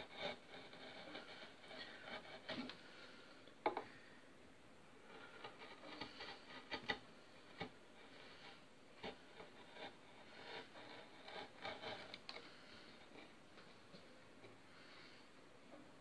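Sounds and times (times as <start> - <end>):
chisel scraping wood: 0.0 - 3.0, 5.0 - 13.4.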